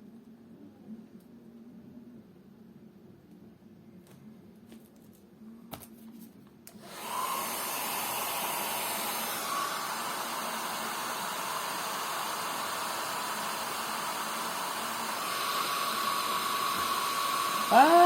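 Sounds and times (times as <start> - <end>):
hair dryer blowing air: 6.7 - 18.0.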